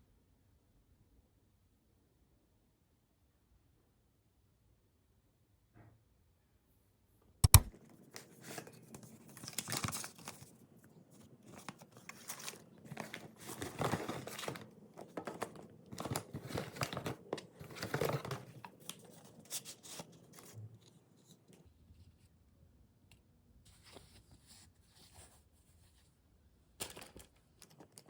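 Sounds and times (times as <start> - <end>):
paper crinkling and rustling: 7.5 - 21.7.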